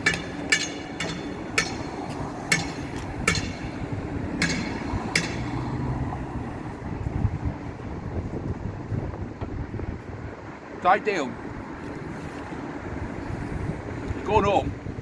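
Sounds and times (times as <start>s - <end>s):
sharp ringing taps: 0.0s - 5.8s
steady background noise: 0.0s - 15.0s.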